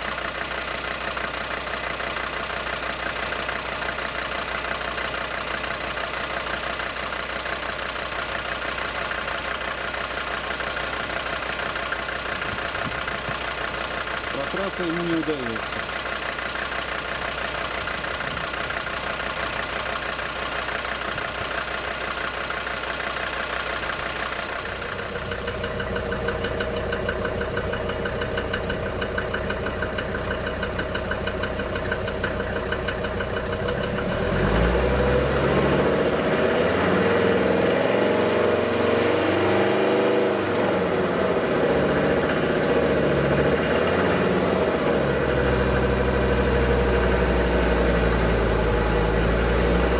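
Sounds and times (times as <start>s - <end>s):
diesel engine knocking and revving: 0.0s - 49.9s.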